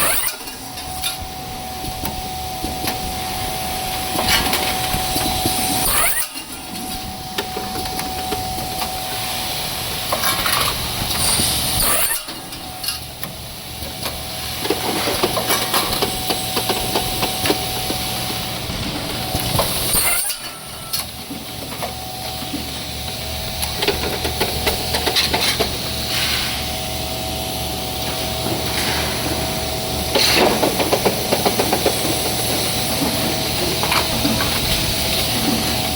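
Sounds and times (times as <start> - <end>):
saw cutting: 0.0 - 1.2, 5.2 - 6.9, 11.1 - 13.0, 19.2 - 21.0
machine motor hum and whine: 0.0 - 35.9.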